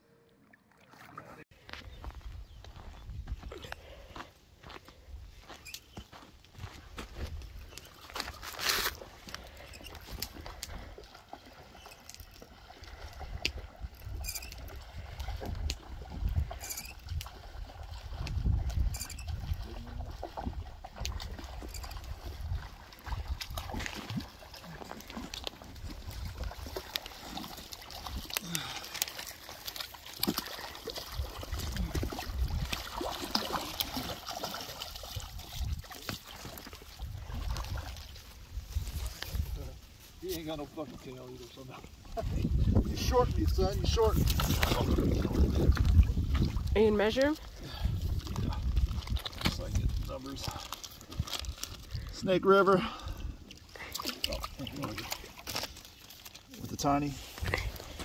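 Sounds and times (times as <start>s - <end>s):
water trickling and splashing: 0.2s - 58.0s
wind rumble on microphone: 1.9s - 3.8s, 13.0s - 23.9s, 31.2s - 32.8s, 35.2s - 35.9s, 36.9s - 39.9s, 42.1s - 52.1s.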